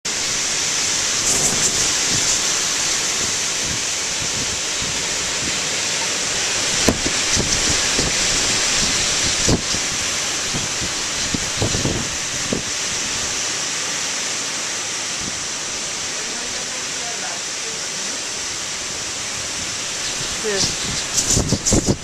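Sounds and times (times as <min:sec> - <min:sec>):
wind buffeting microphone: 0:00.1 - 0:13.5, 0:18.4 - 0:22.0
strong wind hissing: 0:00.1 - 0:22.0.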